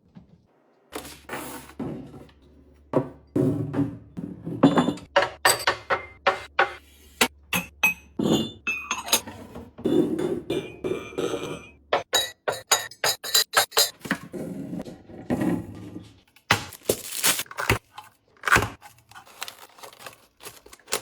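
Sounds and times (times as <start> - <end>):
hard containers clinking: 3.0 - 6.8, 7.6 - 14.3.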